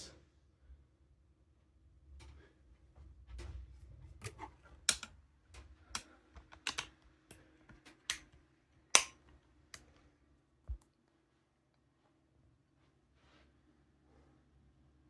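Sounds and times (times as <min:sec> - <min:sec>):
sharp clicks and taps: 0:04.2 - 0:06.9, 0:09.0 - 0:09.3.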